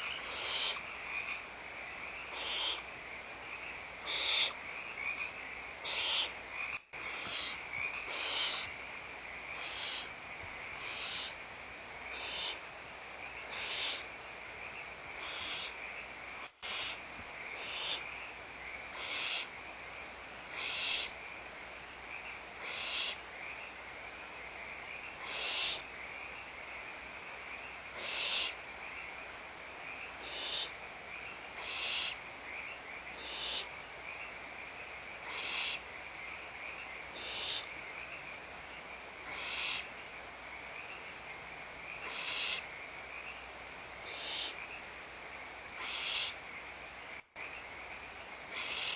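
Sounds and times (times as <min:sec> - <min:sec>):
barn owls hissing calls: 0:00.0 - 0:00.9, 0:02.2 - 0:02.9, 0:04.0 - 0:04.6, 0:05.8 - 0:06.4, 0:07.0 - 0:08.7, 0:09.4 - 0:11.4, 0:12.0 - 0:12.7, 0:13.4 - 0:14.1, 0:15.2 - 0:15.8, 0:16.4 - 0:18.1, 0:18.9 - 0:19.6, 0:20.5 - 0:21.2, 0:22.6 - 0:23.2, 0:25.2 - 0:25.9, 0:27.9 - 0:28.6, 0:30.2 - 0:30.8, 0:31.6 - 0:32.2, 0:33.1 - 0:33.7, 0:35.2 - 0:35.9, 0:37.1 - 0:37.7, 0:39.2 - 0:40.0, 0:42.0 - 0:42.7, 0:44.0 - 0:44.6, 0:45.7 - 0:46.4, 0:48.5 - 0:48.9.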